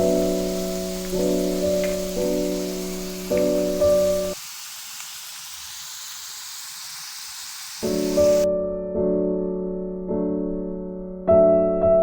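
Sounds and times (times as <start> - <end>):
keyboard chords: 0.0 - 4.4
oil sizzling in deep fryer: 0.0 - 8.5.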